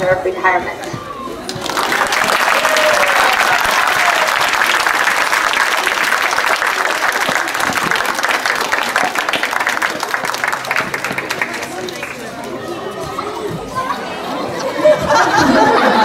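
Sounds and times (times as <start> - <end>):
crowd cheering: 1.0 - 16.0
crowd applauding: 1.4 - 12.9.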